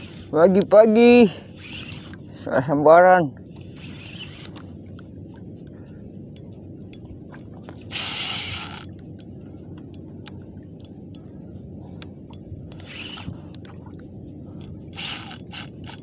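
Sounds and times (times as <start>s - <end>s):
spinning reel gears ticking: 7.9s - 8.9s, 14.6s - 16.0s.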